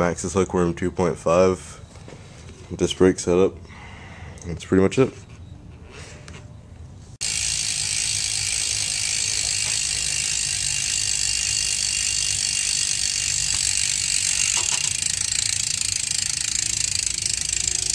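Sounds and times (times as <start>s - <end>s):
bicycle hub ratcheting buzz: 7.2s - 17.9s.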